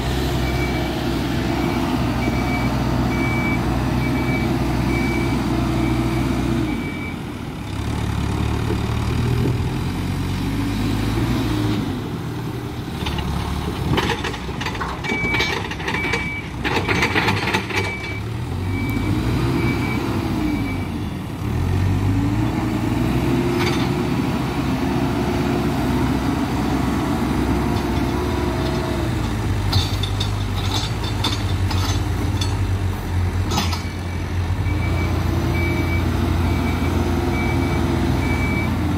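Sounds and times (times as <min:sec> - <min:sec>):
backhoe diesel engine revving: 0:00.0 - 0:38.9
reversing alarm beeping: 0:01.6 - 0:06.1, 0:15.1 - 0:21.0, 0:33.5 - 0:38.8
knocks and clatter: 0:13.0 - 0:18.2, 0:27.7 - 0:32.8, 0:33.4 - 0:34.0.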